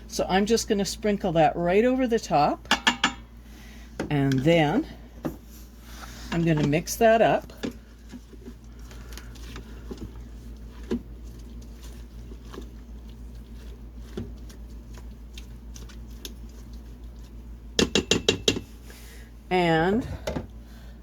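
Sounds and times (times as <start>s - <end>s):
steady low hum: 0.0s - 21.0s
spoon knocking against pot: 2.6s - 3.2s, 17.8s - 18.7s
spoon stirring thick mixture: 5.4s - 18.8s.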